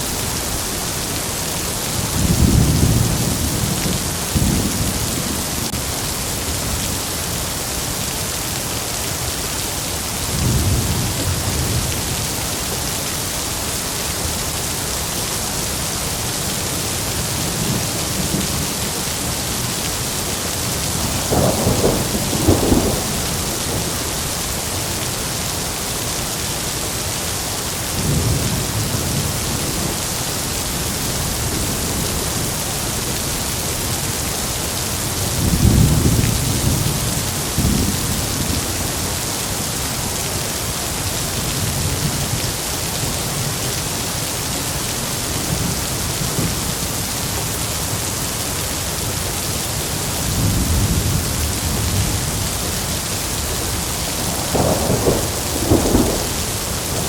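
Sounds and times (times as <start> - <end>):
heavy rain: 0.0 - 57.0
rolling thunder: 20.8 - 24.7, 53.3 - 57.0.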